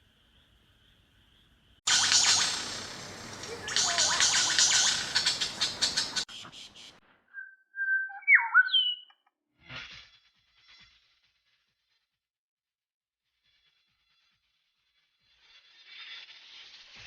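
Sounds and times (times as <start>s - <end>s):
harsh scratchy noise: 1.9s - 7.0s, 13.3s - 17.0s
bird whistling: 3.5s - 9.2s.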